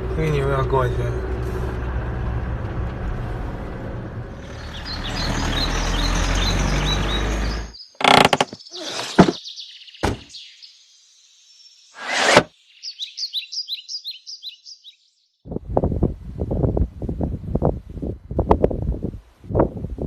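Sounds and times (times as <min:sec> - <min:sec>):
vehicle engine and road noise: 0:00.0 - 0:09.4, 0:12.0 - 0:12.5
bird chirps: 0:04.5 - 0:15.4.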